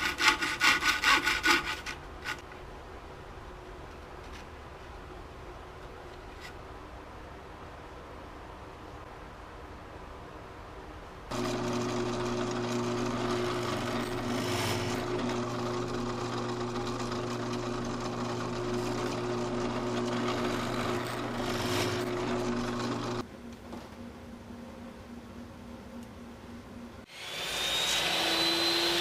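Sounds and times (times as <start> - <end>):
power tool motor humming: 11.3 - 23.2, 27.1 - 29.0.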